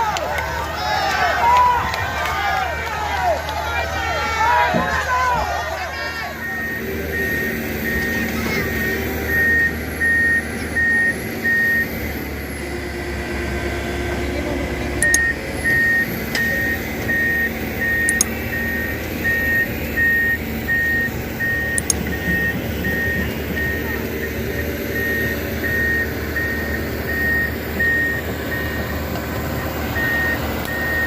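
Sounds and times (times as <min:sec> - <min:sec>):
vehicle engine humming: 0:00.0 - 0:31.0
reversing alarm beeping: 0:06.0 - 0:12.7, 0:15.0 - 0:31.0.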